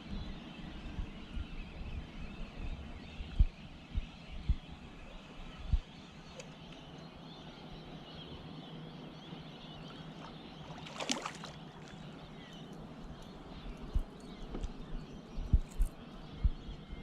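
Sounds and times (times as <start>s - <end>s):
water lapping against kayak: 9.8s - 13.1s
water splash: 10.6s - 12.0s.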